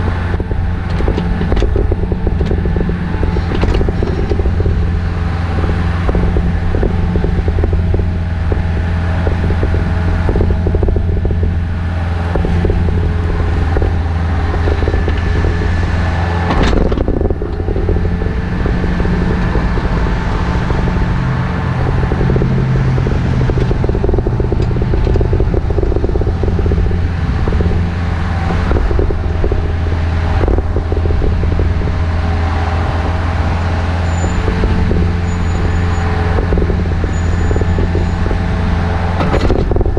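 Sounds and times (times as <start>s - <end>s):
excavator diesel engine running: 0.0s - 39.9s.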